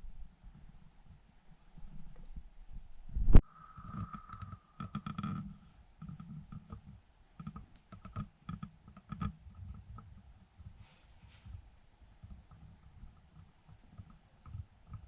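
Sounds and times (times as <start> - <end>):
light clicks and taps: 4.4 - 15.0.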